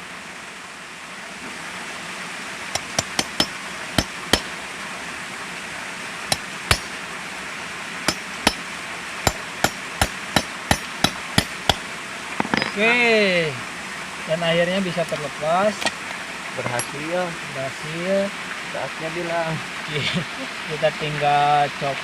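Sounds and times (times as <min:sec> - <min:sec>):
hammer striking metal rod: 0:02.8 - 0:04.5, 0:06.3 - 0:07.0, 0:08.1 - 0:08.6, 0:09.3 - 0:11.8.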